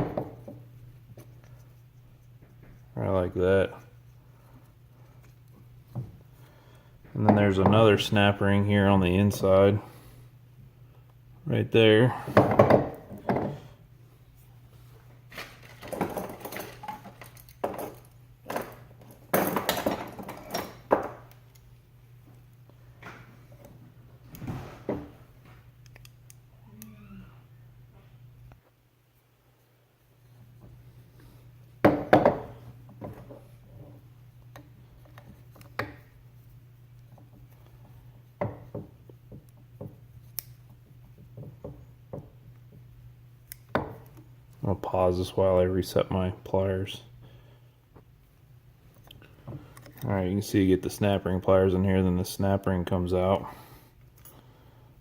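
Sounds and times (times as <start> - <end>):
faint hum: 0.0 - 55.0
metal parts clinking and scraping: 15.5 - 20.9
pliers clicking on metal: 25.8 - 26.9.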